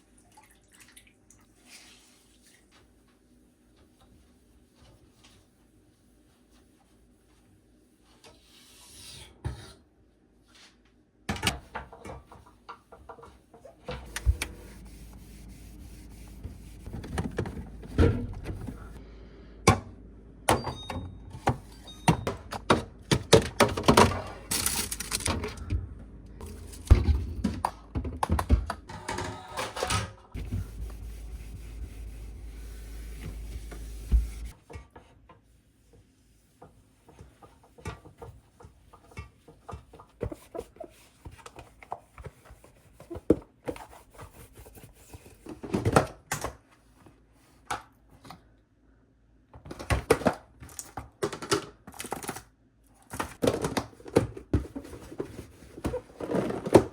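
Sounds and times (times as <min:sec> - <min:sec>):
low steady hum: 0:13.9 - 0:23.2, 0:24.0 - 0:28.0, 0:30.4 - 0:34.6.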